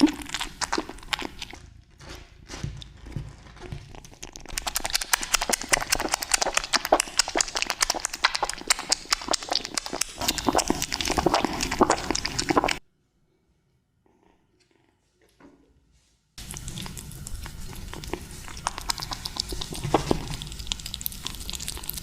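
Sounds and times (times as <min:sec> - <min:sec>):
kittens chewing wetly: 0:00.0 - 0:01.8, 0:02.6 - 0:12.8, 0:16.4 - 0:22.0.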